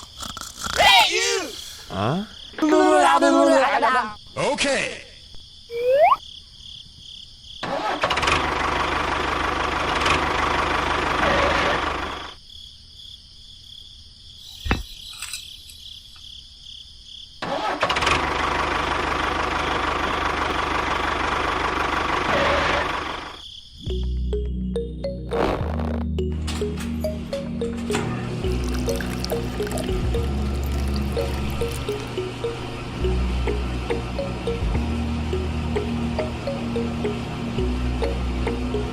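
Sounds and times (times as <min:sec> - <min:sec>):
vehicle engine running: 0:18.2 - 0:23.4, 0:28.3 - 0:38.9.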